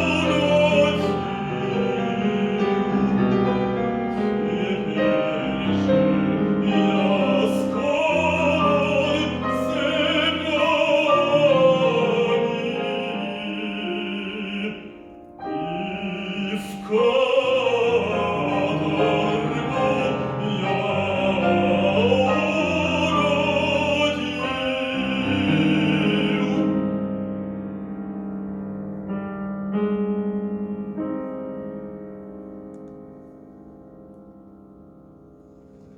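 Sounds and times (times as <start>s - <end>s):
man singing operatically: 0.0s - 26.8s
piano accompaniment: 0.0s - 35.9s.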